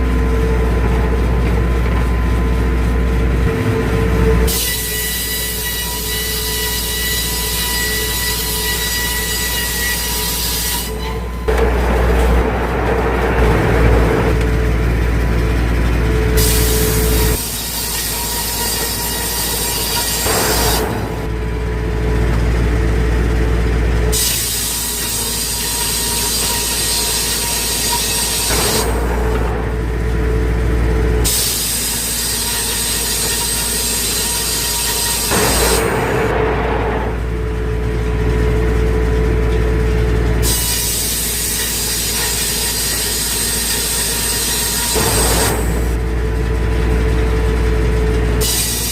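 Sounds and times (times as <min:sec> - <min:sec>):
circular saw blade whine: 0:00.0 - 0:48.9
machine hum: 0:00.0 - 0:48.9
saw cutting log: 0:03.6 - 0:13.0, 0:16.2 - 0:21.3, 0:24.1 - 0:36.4, 0:40.4 - 0:46.0, 0:48.4 - 0:48.9.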